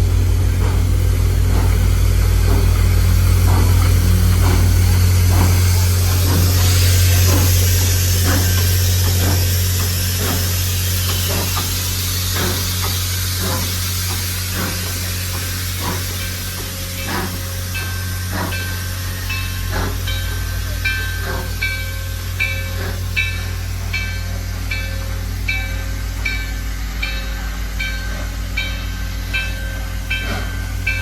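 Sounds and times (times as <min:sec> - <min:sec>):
low hum: 0:00.0 - 0:09.9
steam hissing: 0:00.0 - 0:31.0
train rhythmic beats: 0:00.0 - 0:31.0.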